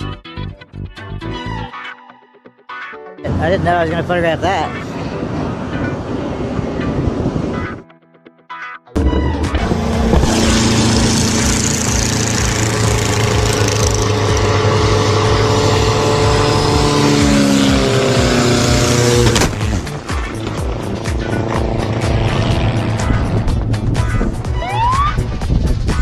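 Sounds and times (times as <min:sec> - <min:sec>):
loud engine humming: 0:09.0 - 0:25.3.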